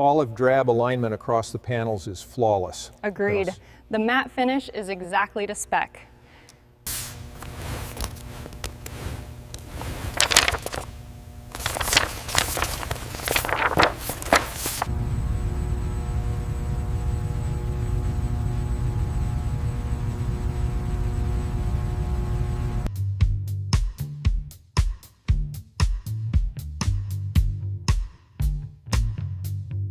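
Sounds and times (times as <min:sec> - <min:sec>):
low machine hum: 0:07.2 - 0:22.9.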